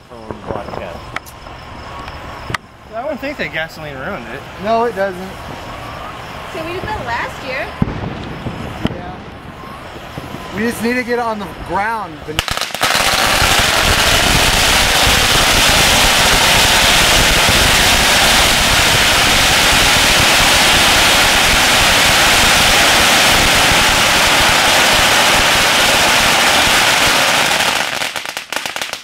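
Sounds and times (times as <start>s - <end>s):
firecrackers crackling: 0.0s - 29.0s.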